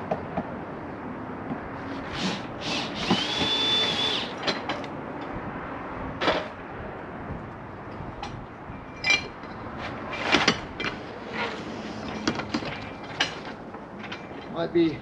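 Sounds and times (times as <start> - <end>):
power drill whining: 2.1 - 4.4.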